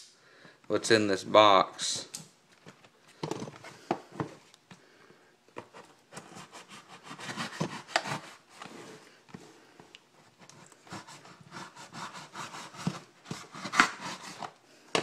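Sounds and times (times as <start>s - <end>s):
cardboard box scraping: 6.2s - 9.0s, 10.9s - 14.5s.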